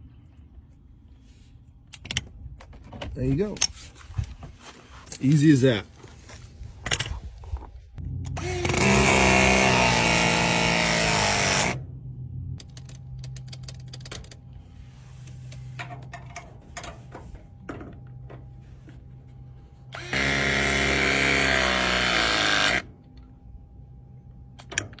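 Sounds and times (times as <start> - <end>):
press tool motor whine: 8.3 - 11.8, 19.9 - 22.9
clicks and handling noise: 12.6 - 14.6.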